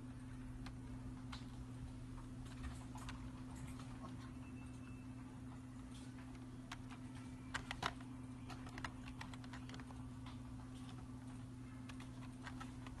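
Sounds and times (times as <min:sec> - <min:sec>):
steady low hum: 0:00.0 - 0:13.0
keyboard key clicks: 0:06.7 - 0:10.0.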